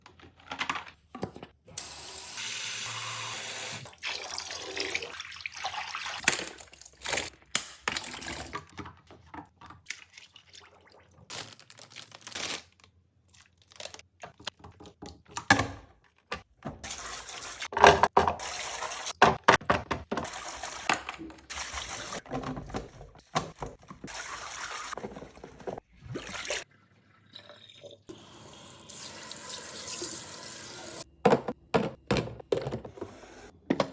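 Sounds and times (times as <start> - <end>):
water running from a tap: 1.8 - 6.2, 27.4 - 31.1.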